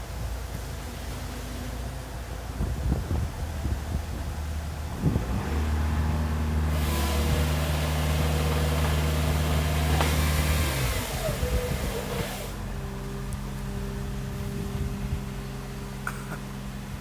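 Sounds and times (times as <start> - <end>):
diesel engine under load: 0.0 - 17.0
hydraulic chainsaw cutting limb: 6.7 - 12.6
wood cracking: 6.8 - 12.6.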